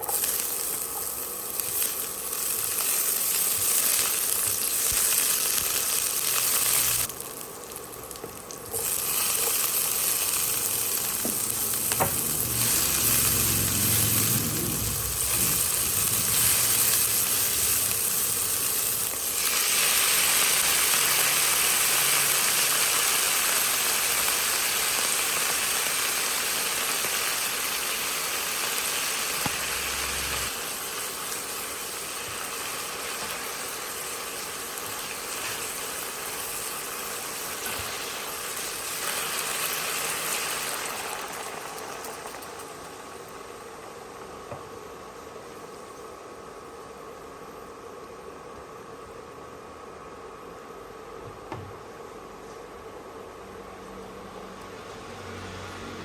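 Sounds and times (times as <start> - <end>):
food sizzling in hot oil: 0.0 - 43.6.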